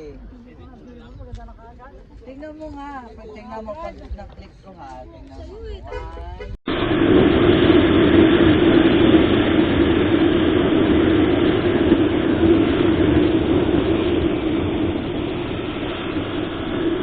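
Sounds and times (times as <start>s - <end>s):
wind rushing over microphone: 0.0s - 17.0s
motorcycle engine drone: 6.7s - 17.0s.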